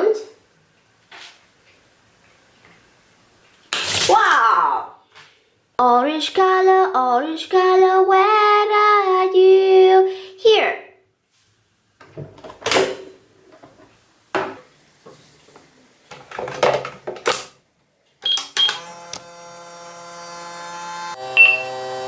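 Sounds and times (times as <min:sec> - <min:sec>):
microwave electric hum: 0:11.1 - 0:22.0
short high beeps: 0:21.4 - 0:21.7.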